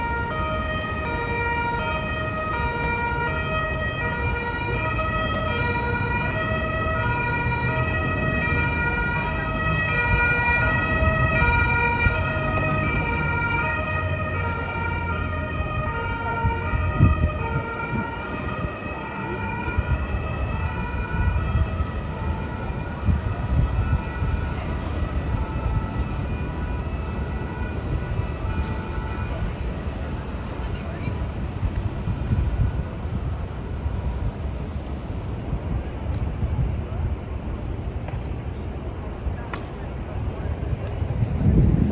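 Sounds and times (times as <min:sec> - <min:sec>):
two-tone siren: 0:00.0 - 0:31.1.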